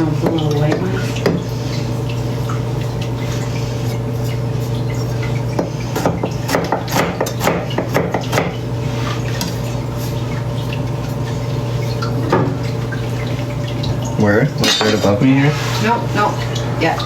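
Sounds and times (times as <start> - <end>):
dishes and utensils clattering: 14.6 - 16.0.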